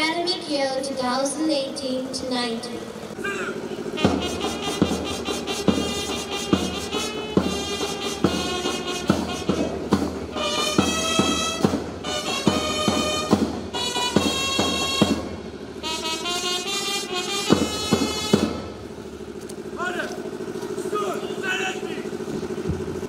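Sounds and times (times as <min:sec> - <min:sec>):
steady drumbeat: 0:02.4 - 0:23.0
wind instrument melody: 0:03.1 - 0:19.0.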